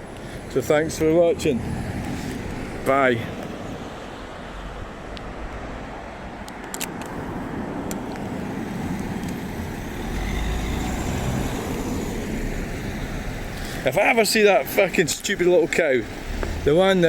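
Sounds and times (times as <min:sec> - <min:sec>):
road traffic passing: 0:00.0 - 0:17.0
vehicle passing close rumbling: 0:08.7 - 0:14.0.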